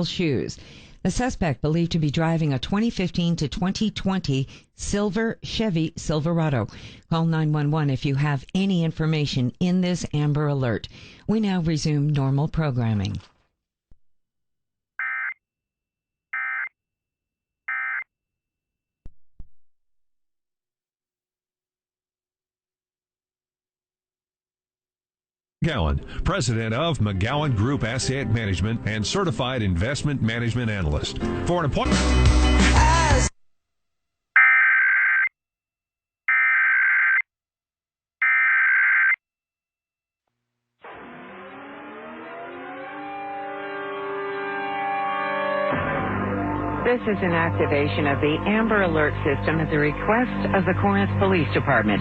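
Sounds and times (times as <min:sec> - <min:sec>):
musical swell: 0:40.9 - 0:46.8.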